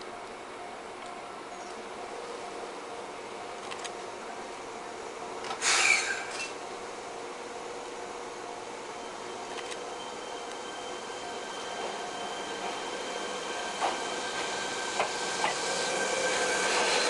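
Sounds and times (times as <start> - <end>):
train equipment humming: 0.0 - 17.0
short burst of hiss: 5.6 - 6.5.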